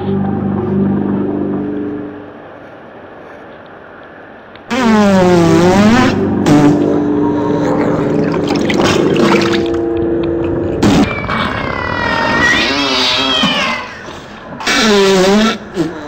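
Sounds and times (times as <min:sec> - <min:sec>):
eerie wailing tones: 0:06.1 - 0:14.7.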